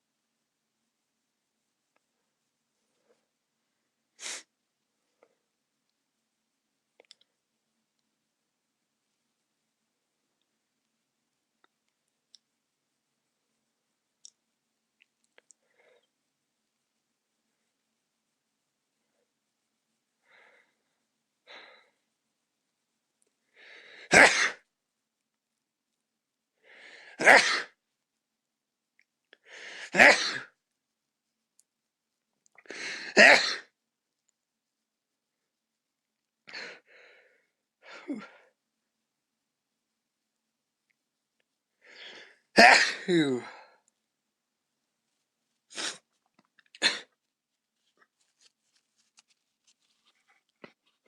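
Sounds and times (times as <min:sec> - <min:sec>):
man sneezing: 0:24.1 - 0:24.6, 0:27.2 - 0:27.8, 0:29.8 - 0:30.5, 0:32.8 - 0:33.7, 0:42.6 - 0:43.6, 0:45.7 - 0:46.0, 0:46.8 - 0:47.1
faint rustles: 0:47.4 - 0:51.0.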